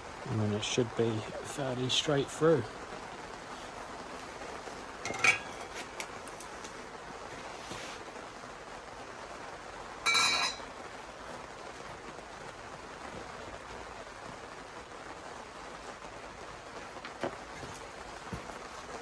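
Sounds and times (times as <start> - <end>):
steady low hiss: 0.0 - 19.0
metallic clink: 5.1 - 5.6, 10.1 - 10.7.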